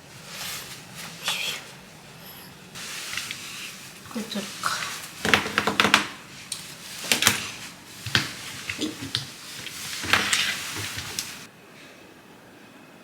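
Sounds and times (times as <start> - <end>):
rustles: 0.0 - 11.5.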